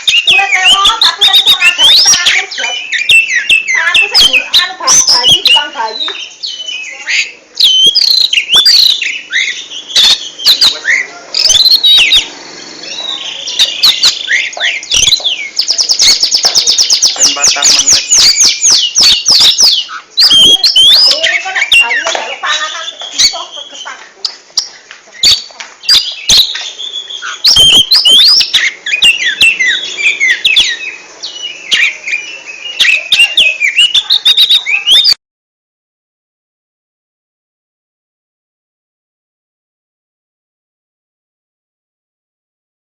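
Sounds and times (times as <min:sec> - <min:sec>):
bird singing whistled notes: 0:00.0 - 0:35.2
buzzy bird trill: 0:00.0 - 0:35.2.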